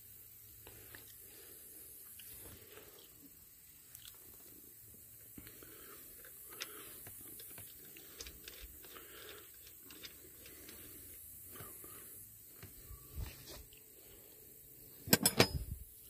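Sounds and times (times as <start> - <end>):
hands handling parts clicking: 6.5 - 11.8, 15.0 - 15.7.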